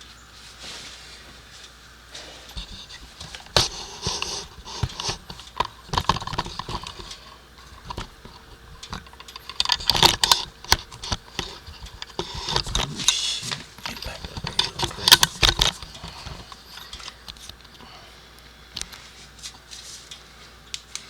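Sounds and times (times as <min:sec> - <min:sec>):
knocks and clicks from handling: 0:02.6 - 0:17.8.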